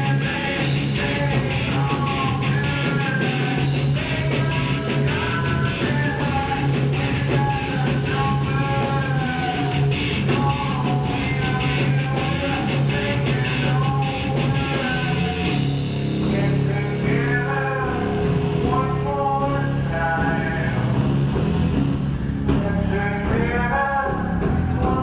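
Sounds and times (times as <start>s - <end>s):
live rock band playing: 0.0s - 25.0s.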